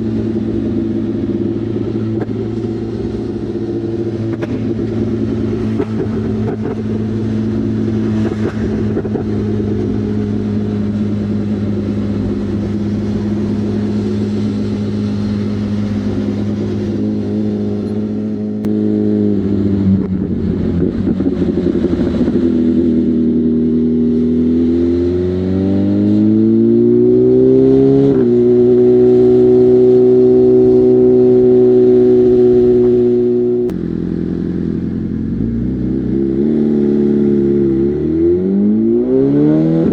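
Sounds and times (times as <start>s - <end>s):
motorcycle engine revving: 0.0s - 39.9s
gear shift: 0.4s - 18.8s.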